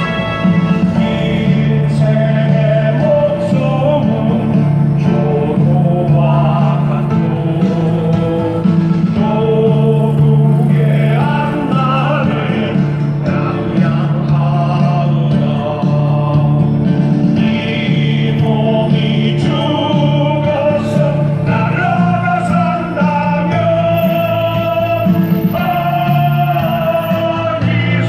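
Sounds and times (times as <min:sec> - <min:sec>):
song with singing: 0:00.0 - 0:28.0
steady bass line: 0:00.0 - 0:28.0.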